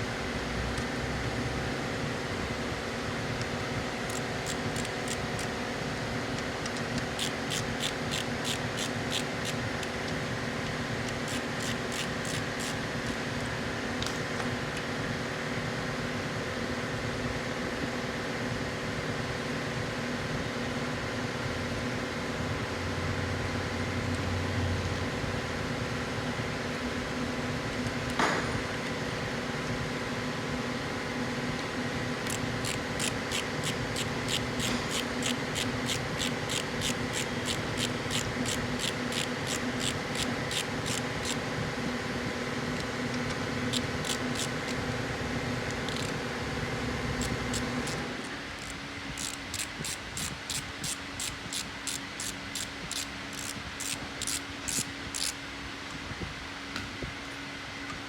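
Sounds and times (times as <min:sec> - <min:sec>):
ratchet wrench clicking: 0:04.1 - 0:05.5, 0:07.2 - 0:09.9, 0:11.1 - 0:13.2, 0:32.2 - 0:41.4, 0:43.7 - 0:44.8, 0:45.8 - 0:46.2, 0:48.6 - 0:55.4
machine hum: 0:21.5 - 0:55.9.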